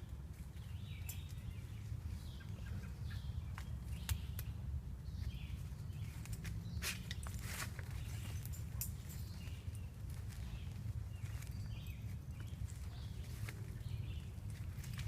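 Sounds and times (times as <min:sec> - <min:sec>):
birds chirping: 0:00.0 - 0:15.0
footsteps on woodland trail: 0:05.0 - 0:15.0.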